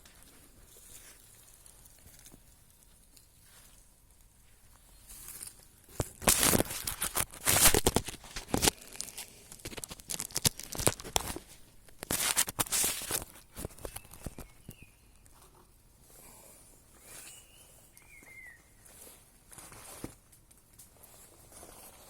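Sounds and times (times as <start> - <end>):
leaves and twigs rustling: 0.0 - 15.6.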